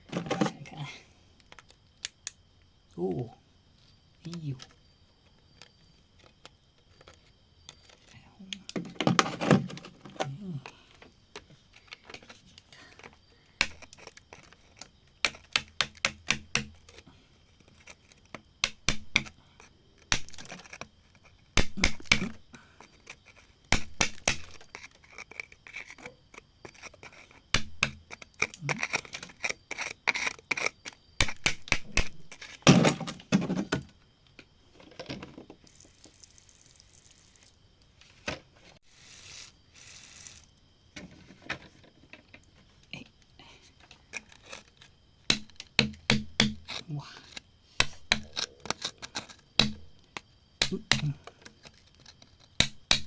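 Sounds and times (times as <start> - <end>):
tools tapping on rock: 13.6 - 17.0, 18.2 - 19.4, 20.0 - 20.9, 21.5 - 33.0, 45.3 - 46.8, 47.8 - 53.0.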